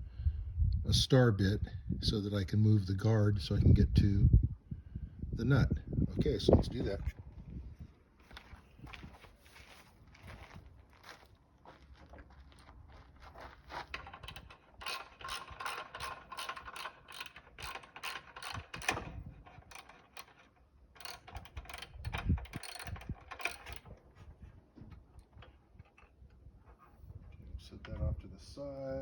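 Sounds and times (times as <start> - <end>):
ratchet driver clicking: 14.0 - 23.9.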